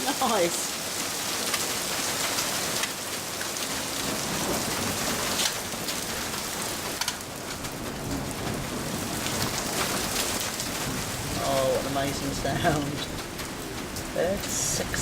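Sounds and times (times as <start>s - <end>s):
close raindrop ticks: 0.0s - 15.0s
heavy rain falling: 0.0s - 15.0s
thunder rumbling: 7.5s - 15.0s.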